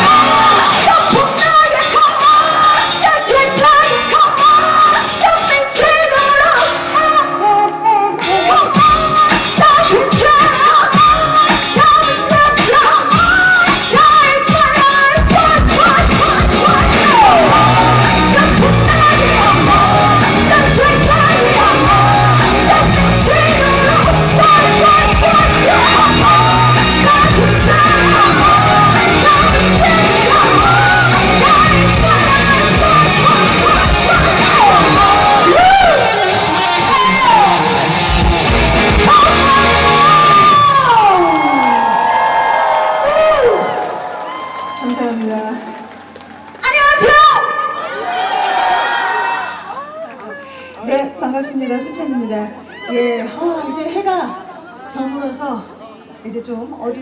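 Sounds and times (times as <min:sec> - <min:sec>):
person singing: 0:00.0 - 0:41.8
live pop-rock band: 0:00.0 - 0:44.7.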